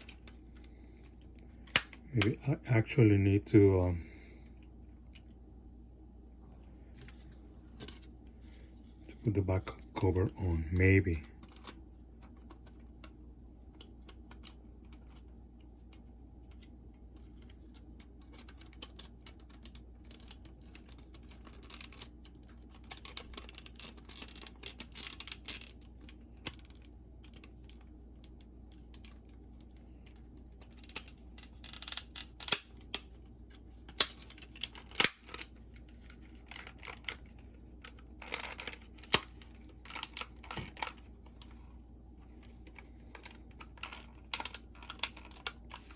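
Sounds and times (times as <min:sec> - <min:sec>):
faint steady hum: 0:00.0 - 0:45.9
sharp plastic snaps: 0:01.7 - 0:02.4, 0:30.0 - 0:37.2
plastic clicks and rattles: 0:15.9 - 0:41.5, 0:42.7 - 0:45.9.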